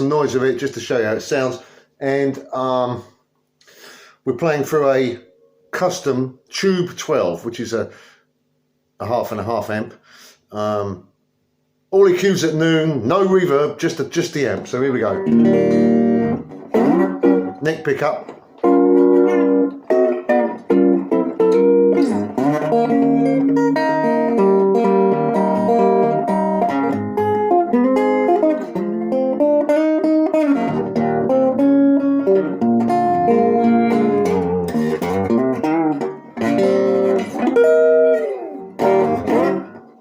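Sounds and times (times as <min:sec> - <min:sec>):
electric guitar playing: 0:12.6 - 0:40.0.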